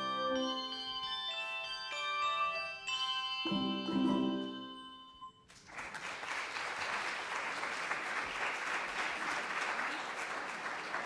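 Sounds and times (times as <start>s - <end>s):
mallet percussion music: 0.0s - 5.4s
audience applause: 5.5s - 11.0s.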